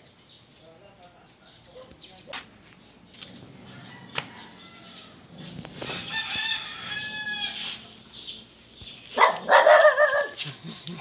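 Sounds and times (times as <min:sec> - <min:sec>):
rooster crowing: 0:03.7 - 0:07.8.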